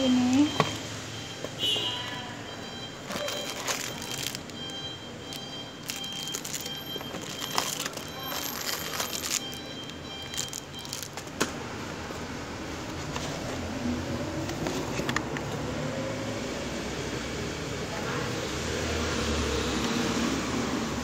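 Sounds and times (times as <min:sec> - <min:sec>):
packaging rustling and crackling: 0:03.0 - 0:11.4.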